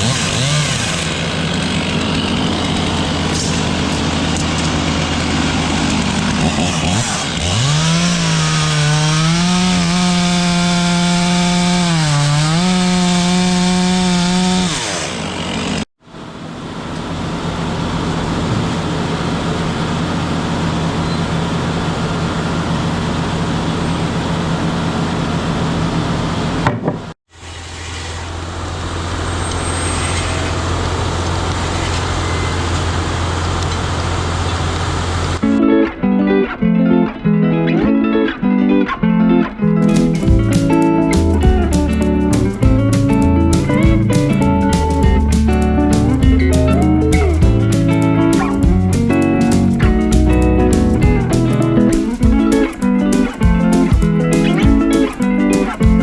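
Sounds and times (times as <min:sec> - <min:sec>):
saw whining through wood: 0:00.0 - 0:15.9
sawmill machine drone: 0:00.0 - 0:26.6.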